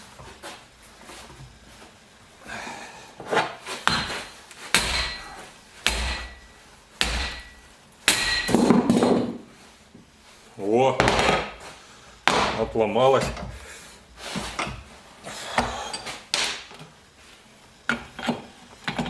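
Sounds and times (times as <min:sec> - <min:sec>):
hammer striking metal: 0:03.9 - 0:08.9.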